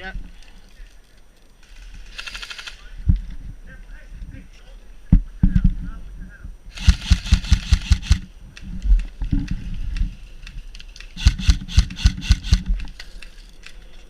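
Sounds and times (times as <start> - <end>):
airsoft rifle bursts: 2.1 - 2.8, 6.7 - 8.3, 11.1 - 13.1.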